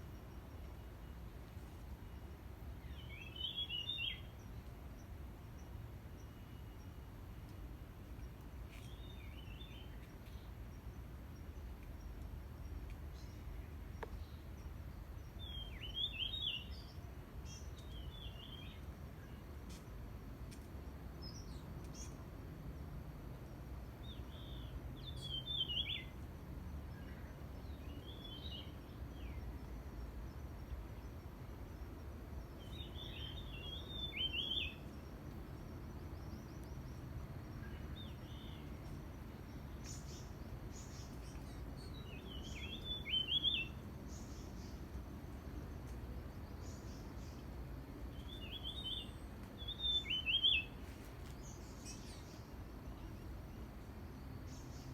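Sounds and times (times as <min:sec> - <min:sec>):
low forest background rumble: 0:00.0 - 0:54.9
songbird singing: 0:00.0 - 0:54.9
faint bird chirps: 0:32.5 - 0:45.0, 0:48.1 - 0:54.9.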